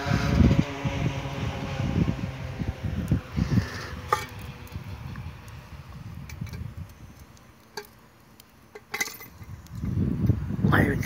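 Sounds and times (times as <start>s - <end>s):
kettle clinking on metal tripod: 8.7s - 9.5s.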